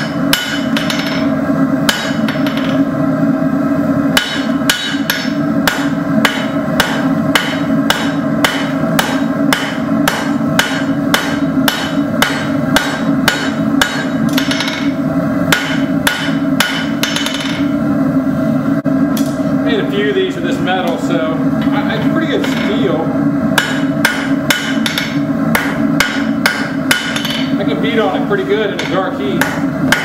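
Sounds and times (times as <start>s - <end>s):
hammer striking steel on anvil: 0.0s - 2.8s, 4.2s - 17.7s, 23.6s - 27.6s, 28.8s - 30.0s.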